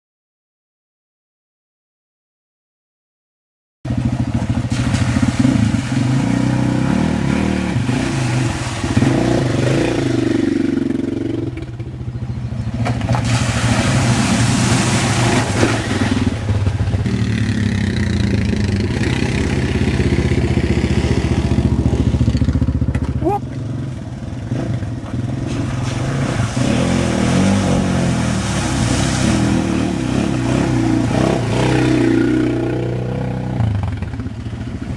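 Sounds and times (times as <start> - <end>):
quad bike engine revving: 3.9 - 34.9
rushing water hiss: 13.2 - 16.4, 25.3 - 32.2.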